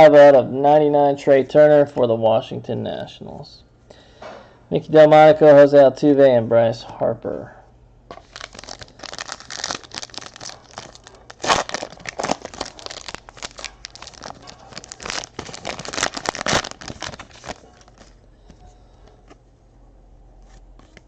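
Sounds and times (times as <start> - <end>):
foil wrapper tearing and crinkling: 8.2 - 18.2.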